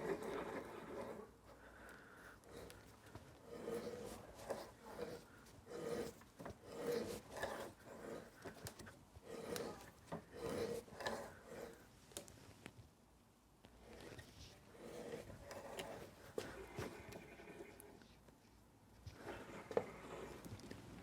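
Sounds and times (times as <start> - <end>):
hand tool rasping on steel bolt: 3.4 - 11.8.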